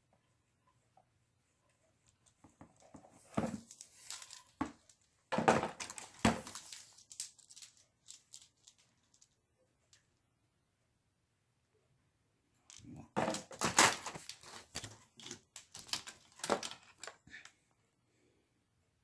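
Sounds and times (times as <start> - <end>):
packaging crinkling and rustling: 2.7 - 9.4, 13.2 - 17.2.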